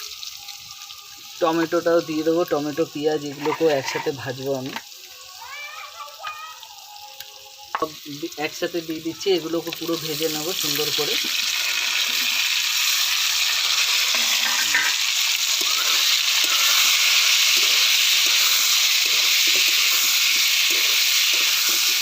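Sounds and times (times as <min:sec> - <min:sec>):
vegetables sizzling in hot oil: 0:00.0 - 0:22.0.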